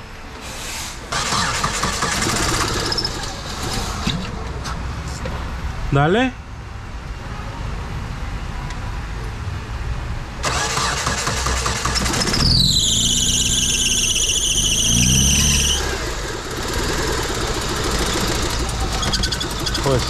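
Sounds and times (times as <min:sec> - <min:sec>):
starter cranking engine: 0:01.1 - 0:04.0, 0:10.4 - 0:20.0
misfiring engine running: 0:01.1 - 0:04.1, 0:10.4 - 0:20.0
high squeal: 0:02.6 - 0:03.4, 0:11.7 - 0:20.0.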